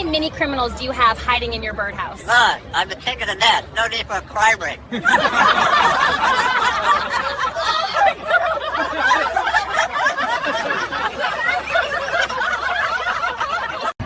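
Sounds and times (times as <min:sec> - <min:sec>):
people laughing: 0:04.8 - 0:14.0.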